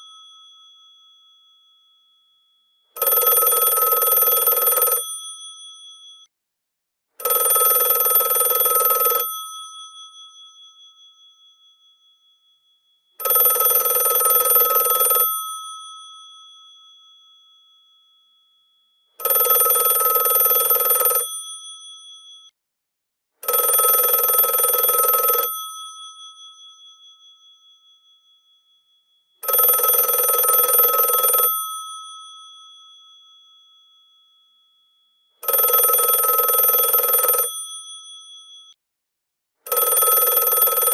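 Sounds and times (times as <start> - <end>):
rotary telephone bells ringing: 3.0 - 5.9, 7.2 - 10.8, 13.2 - 16.2, 19.2 - 22.5, 23.4 - 27.0, 29.4 - 32.8, 35.4 - 38.8, 39.7 - 40.9.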